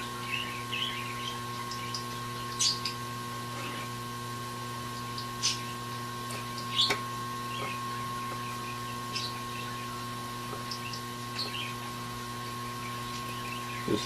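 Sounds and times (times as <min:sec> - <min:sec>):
electrical hum: 0:00.0 - 0:14.0
high constant whine: 0:00.0 - 0:14.0.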